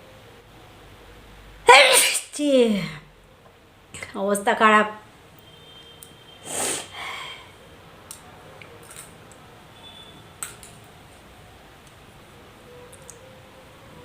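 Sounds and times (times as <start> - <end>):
sharp nasal breath: 6.3 - 7.6.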